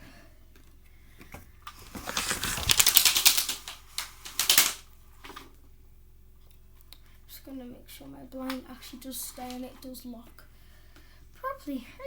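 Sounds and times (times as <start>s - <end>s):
window blind clattering: 1.7s - 4.9s.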